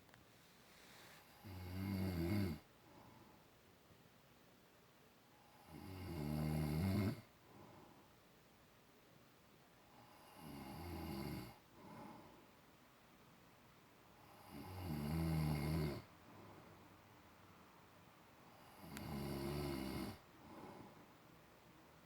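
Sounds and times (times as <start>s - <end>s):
soft breath: 0.2s - 1.5s, 2.7s - 3.6s, 7.3s - 8.3s, 11.6s - 12.7s, 16.0s - 17.3s, 20.1s - 21.6s
man snoring: 1.4s - 2.6s, 5.5s - 7.3s, 10.0s - 11.6s, 14.2s - 16.1s, 18.6s - 20.8s.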